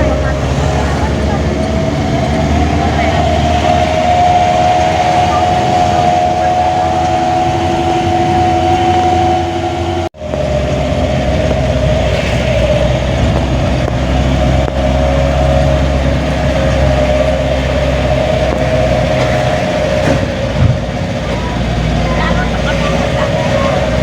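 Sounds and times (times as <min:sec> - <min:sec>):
vehicle engine rumble and whine: 0:00.0 - 0:24.0.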